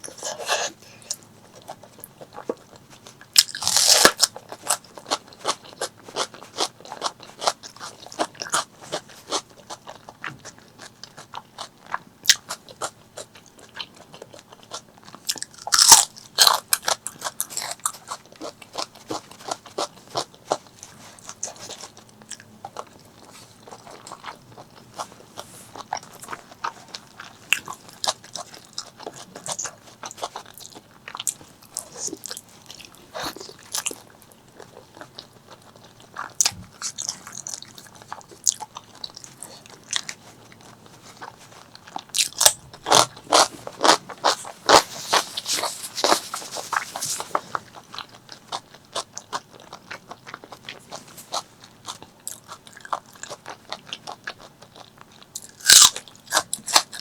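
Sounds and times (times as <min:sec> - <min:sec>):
crunchy bites and chewing: 0:00.0 - 0:57.0.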